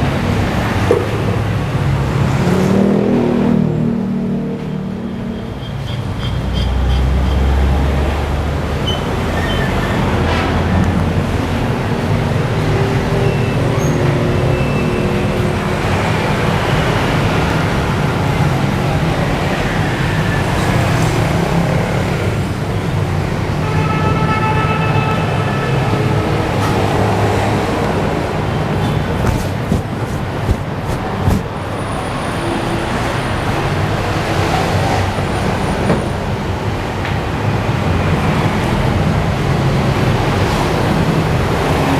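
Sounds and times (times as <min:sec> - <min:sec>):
vehicle engines rumbling: 0:06.6 - 0:36.5
vehicle horn: 0:16.8 - 0:31.2.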